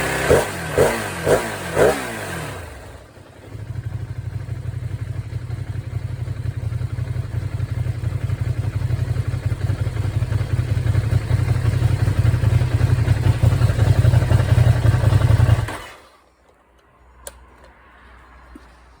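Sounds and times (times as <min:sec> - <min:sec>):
motorcycle engine idling: 0:02.8 - 0:15.9
faint click: 0:16.5 - 0:17.8.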